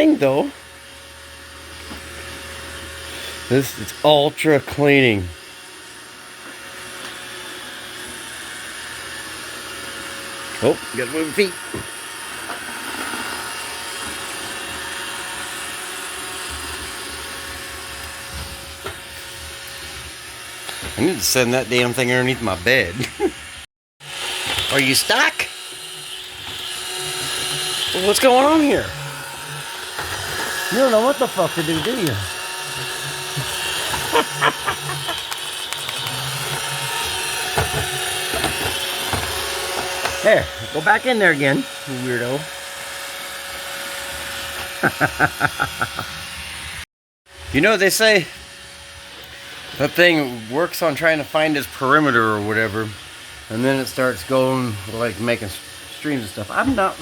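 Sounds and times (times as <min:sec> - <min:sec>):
robot vacuum whirring: 0:04.8 - 0:46.8, 0:47.4 - 0:57.0.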